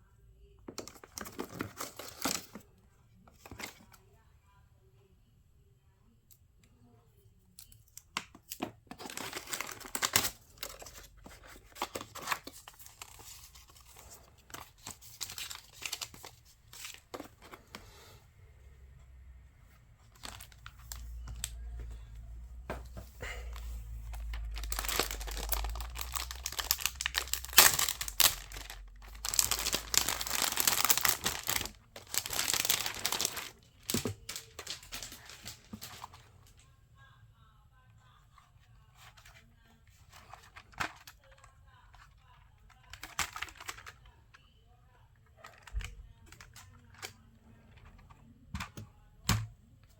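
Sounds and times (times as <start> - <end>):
packaging crinkling and tearing: 0.8 - 2.6, 8.4 - 17.6, 20.1 - 21.6, 24.0 - 36.2, 42.9 - 44.0.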